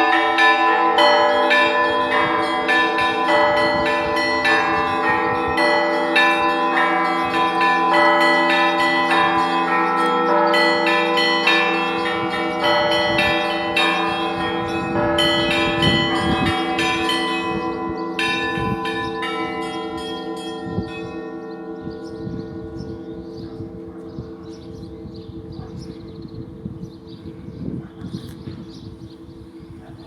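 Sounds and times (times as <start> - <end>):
deep bells humming: 0.0 - 27.9.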